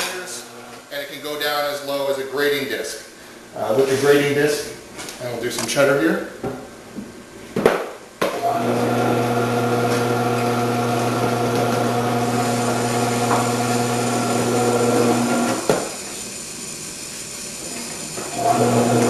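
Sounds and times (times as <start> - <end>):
electric motor grating cheese: 8.4 - 19.0.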